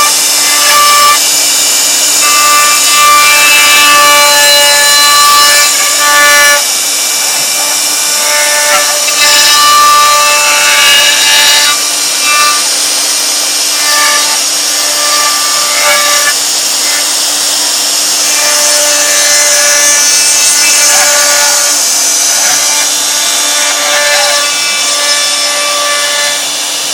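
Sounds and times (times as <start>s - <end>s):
router bit cutting wood hiss: 0.0s - 26.9s
spindle whine: 11.7s - 25.4s.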